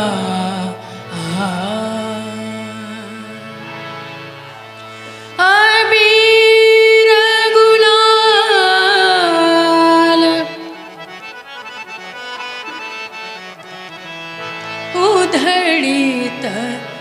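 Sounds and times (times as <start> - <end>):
woman singing: 0.0 - 3.5, 5.4 - 11.0, 14.9 - 17.0
held accompaniment notes: 0.0 - 17.0.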